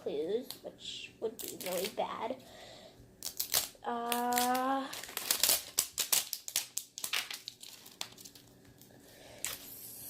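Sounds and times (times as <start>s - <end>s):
plastic wrapping crinkling and tearing: 1.4s - 2.1s, 3.2s - 9.7s.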